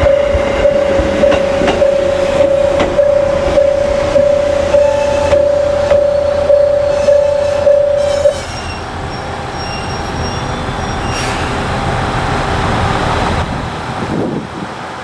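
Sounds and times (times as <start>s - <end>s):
level crossing bell ringing: 0.0s - 10.8s
train rumbling: 0.0s - 15.0s.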